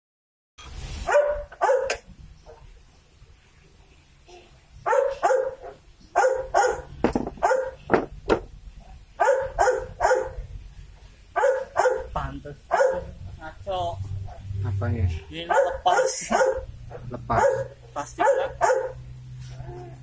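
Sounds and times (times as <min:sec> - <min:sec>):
dog barking: 0:01.0 - 0:02.7, 0:04.8 - 0:07.8, 0:08.8 - 0:10.5, 0:11.4 - 0:13.2, 0:15.4 - 0:19.0
sharp knocks: 0:07.0 - 0:08.5.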